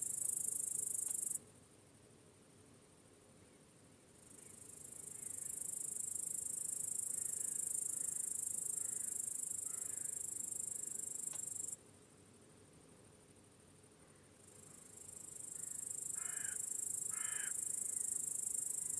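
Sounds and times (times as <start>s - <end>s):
cricket chorus trilling: 0.0s - 1.4s, 4.2s - 11.8s, 13.4s - 18.9s
soft cricket chirps: 0.0s - 18.9s.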